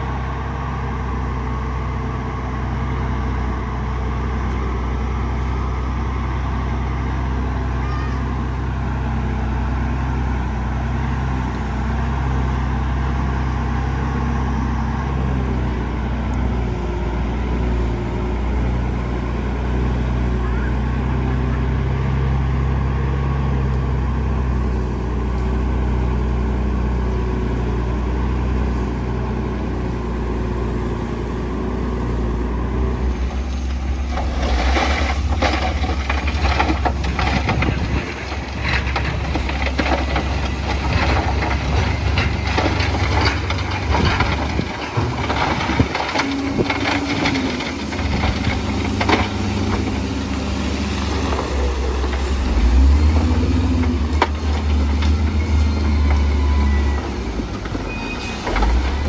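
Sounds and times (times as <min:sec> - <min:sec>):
bulldozer diesel engine running: 0:00.0 - 0:59.0
clattering and knocking: 0:34.1 - 0:50.0.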